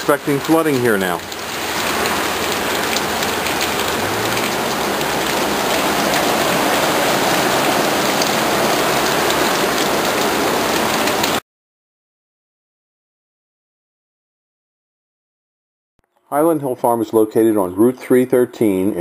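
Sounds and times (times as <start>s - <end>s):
heavy rain on ground: 0.0s - 11.4s.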